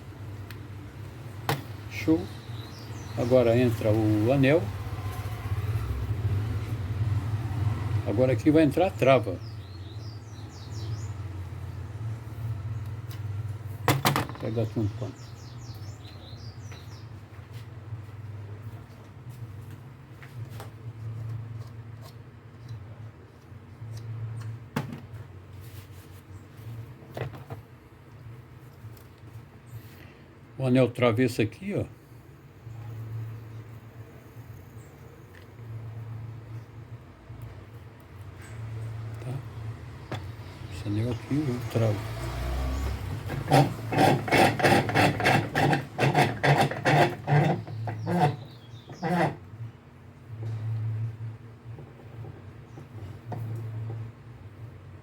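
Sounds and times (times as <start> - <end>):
hand rasping strokes: 42.0 - 49.5.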